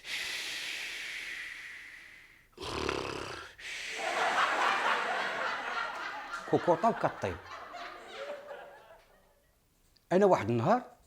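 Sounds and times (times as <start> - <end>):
man imitating a snore: 2.6 - 3.6.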